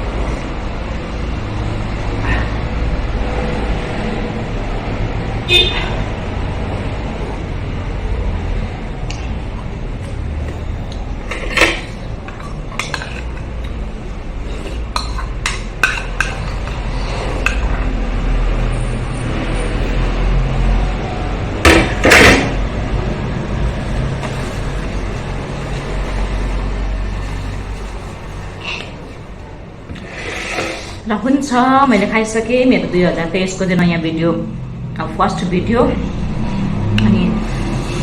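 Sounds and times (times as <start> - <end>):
spoon and dishes clinking: 11.3 - 13.8, 14.5 - 17.8.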